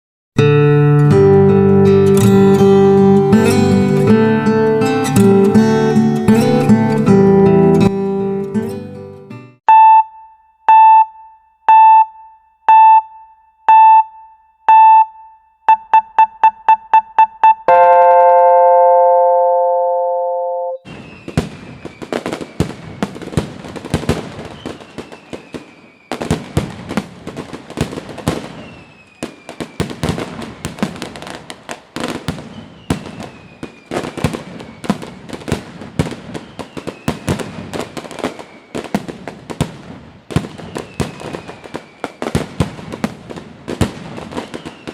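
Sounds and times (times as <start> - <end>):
long held chord: 0.8 - 8.6, 17.7 - 20.8
electronic countdown beeps: 9.7 - 20.8
fireworks whistles: 20.8 - 27.1, 27.8 - 39.7, 40.3 - 43.1, 43.8 - 44.9
fireworks bursting and crackling: 20.9 - 44.9.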